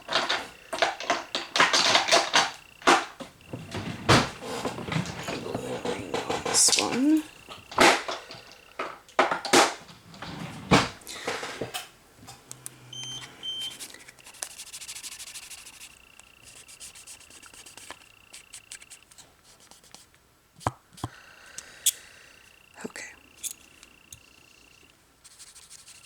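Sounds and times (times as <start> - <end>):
rummaging in a drawer: 0.0 - 12.4
faint high whine: 11.0 - 19.2.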